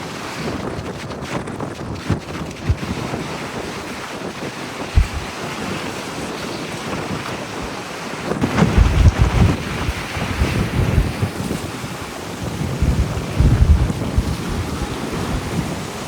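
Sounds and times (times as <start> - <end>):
wind buffeting microphone: 0.0 - 16.0
surf rushing: 2.6 - 16.0.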